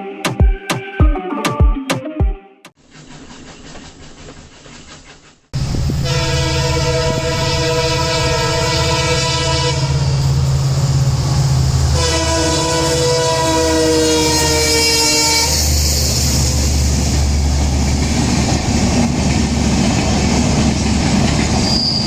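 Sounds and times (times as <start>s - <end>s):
diesel locomotive engine rumbling: 3.1s - 22.0s
multi-tone train horn blasts: 5.7s - 10.3s, 11.9s - 16.3s.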